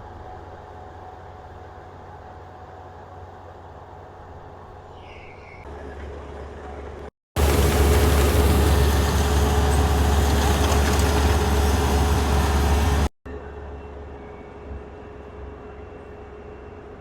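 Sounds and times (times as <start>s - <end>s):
combine harvester running: 7.4s - 13.1s
machine whine: 7.4s - 13.1s.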